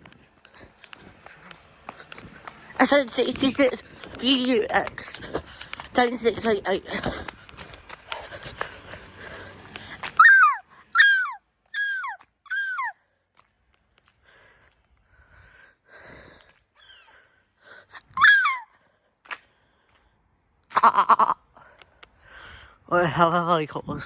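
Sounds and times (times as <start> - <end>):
gull calling: 10.2 - 13.0.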